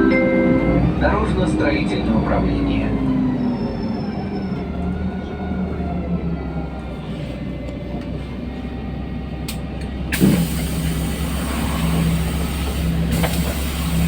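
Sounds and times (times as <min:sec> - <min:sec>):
bus engine hum: 0:00.0 - 0:14.0
compressed air hissing: 0:10.2 - 0:14.0.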